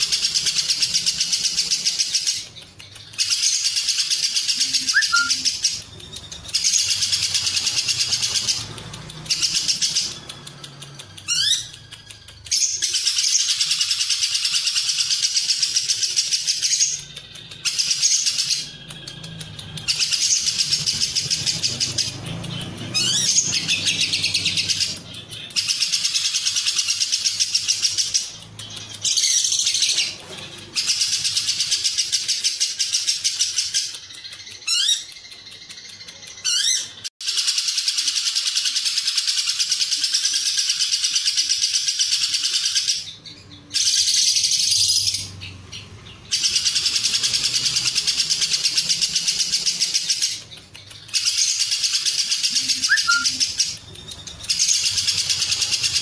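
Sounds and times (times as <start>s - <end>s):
lovebird chattering song: 0.0s - 56.0s
quick rising whistles: 4.8s - 5.5s, 52.8s - 53.4s.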